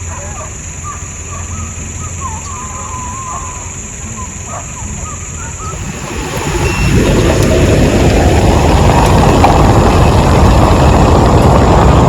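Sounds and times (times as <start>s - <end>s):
vehicle driving rumble: 0.0s - 12.0s.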